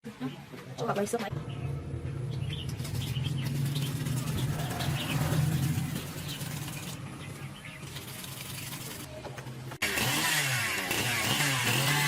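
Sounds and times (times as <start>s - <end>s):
small birds chirping: 1.3s - 9.2s.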